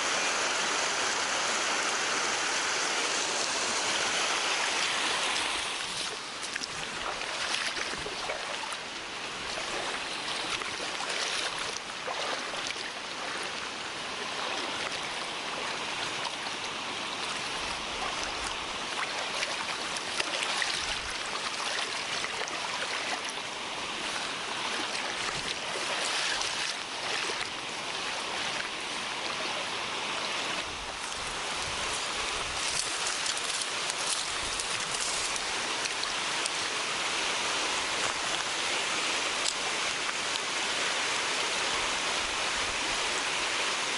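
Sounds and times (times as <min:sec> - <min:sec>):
mountain stream water rushing: 0:00.0 - 0:43.9.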